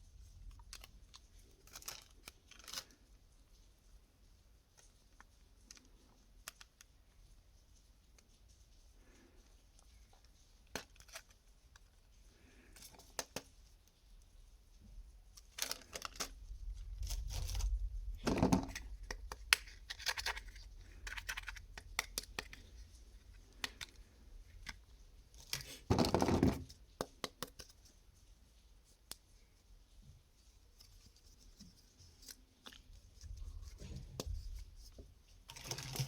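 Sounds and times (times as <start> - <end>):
packaging rustling and tearing: 15.5 - 26.7, 30.8 - 36.0
clicks and taps on packaging: 26.0 - 27.7.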